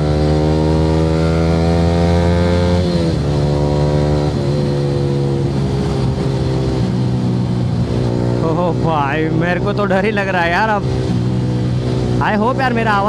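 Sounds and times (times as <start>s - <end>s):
motorcycle engine under throttle: 0.0s - 13.0s.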